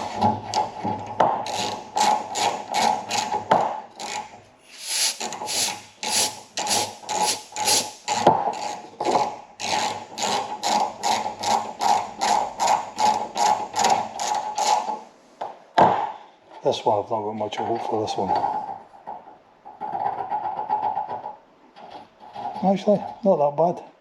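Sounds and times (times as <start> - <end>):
hand reamer rasping through metal: 0.0 - 8.8, 9.6 - 15.0, 19.8 - 23.2.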